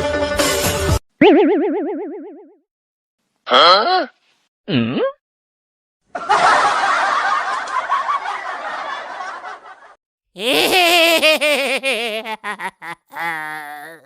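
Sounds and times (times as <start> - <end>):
warbling comedy sound effect: 1.2 - 2.6
group of people laughing: 6.1 - 13.8.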